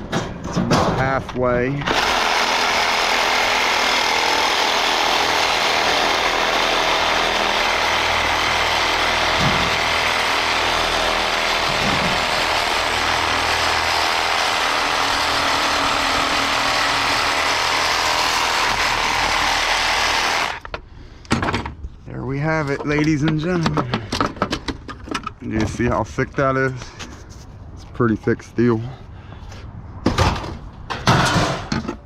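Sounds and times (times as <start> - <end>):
power tool cutting steel: 1.8 - 20.7.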